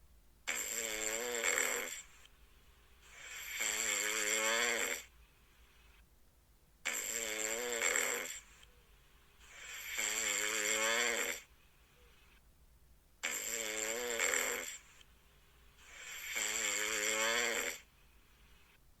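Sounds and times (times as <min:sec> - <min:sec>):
cat snoring: 0:00.5 - 0:02.3, 0:03.0 - 0:05.2, 0:06.8 - 0:08.7, 0:09.4 - 0:11.5, 0:13.2 - 0:15.0, 0:15.8 - 0:17.9.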